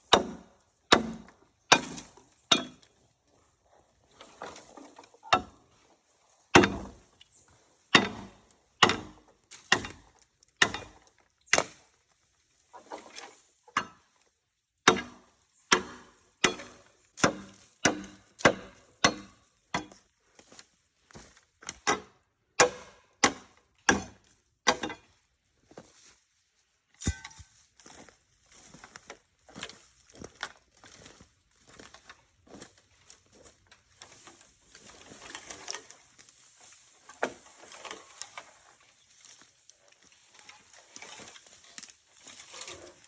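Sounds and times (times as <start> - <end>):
blade chopping bamboo: 0.1 - 2.8, 6.5 - 7.0, 7.9 - 11.8, 14.9 - 20.0, 21.7 - 25.0, 27.0 - 27.5.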